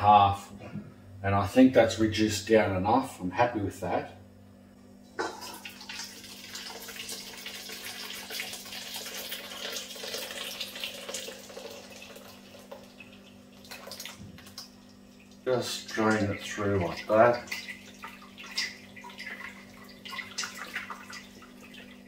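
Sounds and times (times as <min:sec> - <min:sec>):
sauce pouring and splashing: 0:05.3 - 0:22.0.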